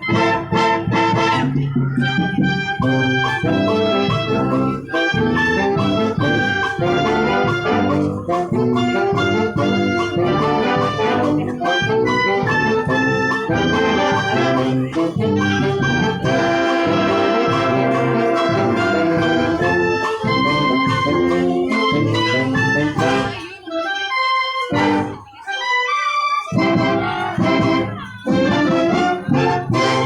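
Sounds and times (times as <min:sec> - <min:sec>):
brass band playing: 0:00.0 - 0:30.0.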